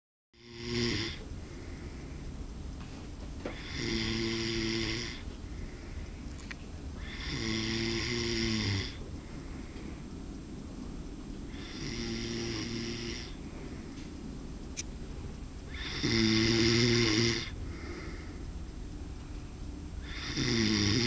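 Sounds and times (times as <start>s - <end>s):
man snoring: 0.4s - 1.2s, 3.5s - 5.2s, 7.0s - 9.0s, 11.5s - 13.4s, 15.7s - 18.0s, 20.0s - 21.0s
quiet breathing: 0.4s - 21.0s.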